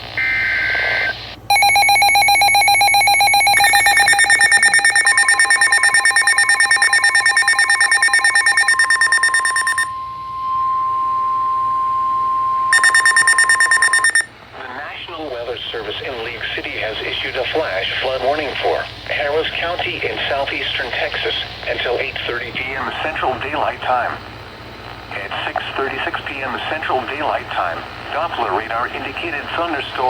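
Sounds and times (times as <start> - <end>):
steady warning tone: 0.2 - 30.0
data burst: 1.5 - 14.3
fast-pulsing electronic alert alarm: 1.5 - 14.3.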